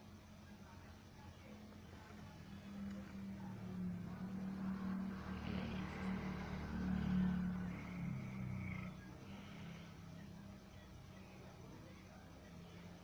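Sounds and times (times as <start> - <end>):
person snoring heavily: 4.0 - 10.2.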